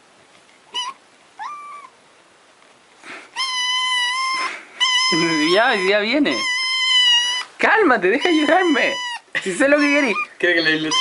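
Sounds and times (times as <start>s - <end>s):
cat meowing: 0.7s - 2.0s, 3.4s - 7.6s, 8.2s - 11.0s.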